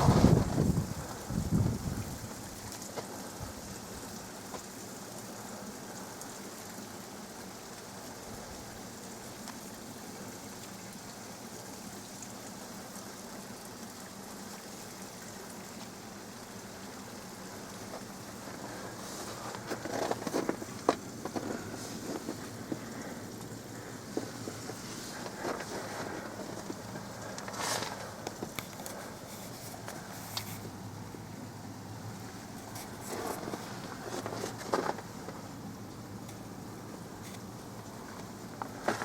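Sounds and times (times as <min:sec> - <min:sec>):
wind rumble on microphone: 0:00.0 - 0:02.7
river water running: 0:00.0 - 0:39.0.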